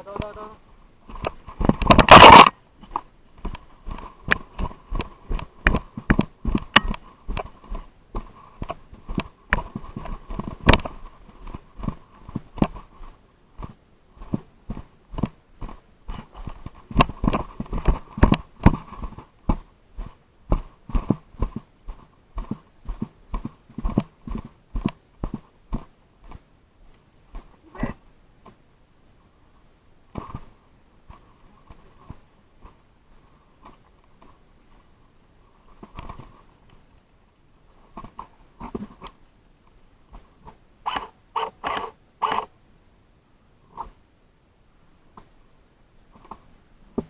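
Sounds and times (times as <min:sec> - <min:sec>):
footsteps on ground: 0:01.0 - 0:26.5.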